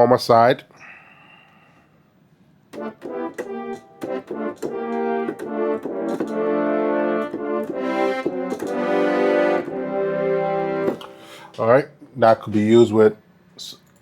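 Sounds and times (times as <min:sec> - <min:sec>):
synthesizer french horn chords: 0:02.8 - 0:11.6.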